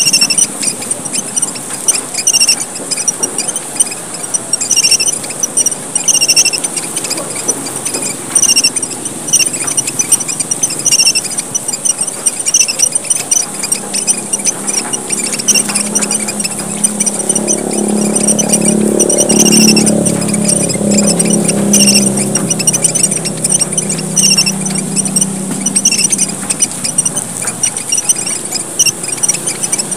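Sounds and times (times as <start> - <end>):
finches chirping: 0.0 - 29.9
steady high bird trill: 0.0 - 29.9.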